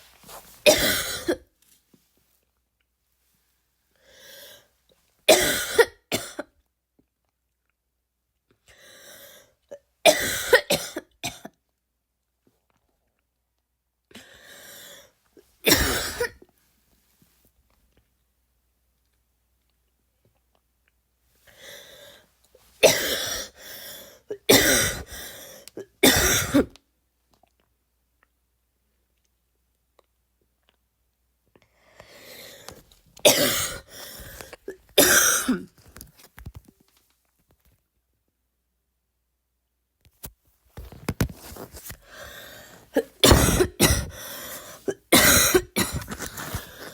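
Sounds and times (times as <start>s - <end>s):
woman coughing: 0.7s - 1.5s, 5.3s - 6.4s, 10.1s - 11.5s, 15.7s - 16.4s, 22.8s - 23.5s, 24.3s - 25.1s, 26.0s - 26.7s, 33.3s - 35.7s, 43.0s - 46.3s
breath in: 31.7s - 32.8s, 42.0s - 42.9s, 44.0s - 44.9s.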